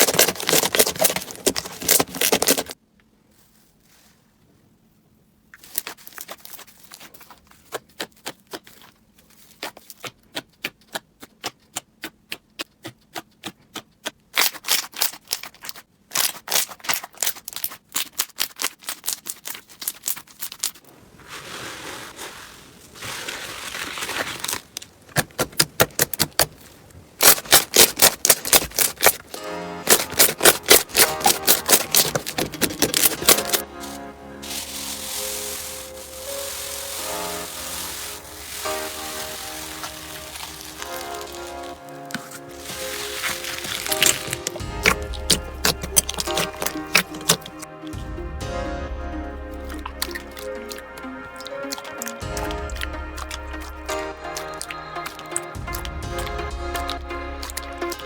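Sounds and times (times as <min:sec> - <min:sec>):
slime crackling and popping: 0:00.0 - 0:02.8, 0:14.3 - 0:20.9, 0:23.0 - 0:48.0, 0:49.6 - 0:58.0.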